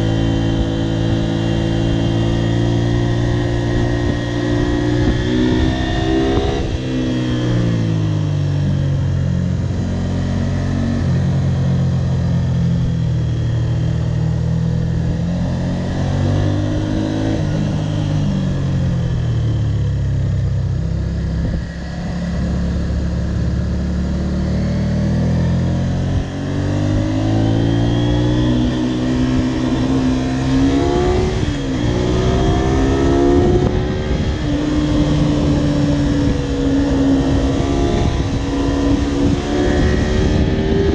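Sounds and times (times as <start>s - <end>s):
motorcycle engine accelerating: 0.0s - 40.9s.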